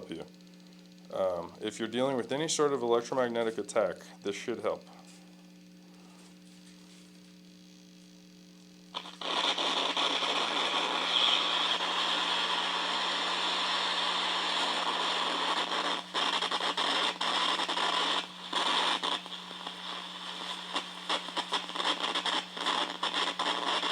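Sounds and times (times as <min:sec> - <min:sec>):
electrical static hiss: 0:00.0 - 0:23.9
low electrical hum: 0:00.0 - 0:23.9.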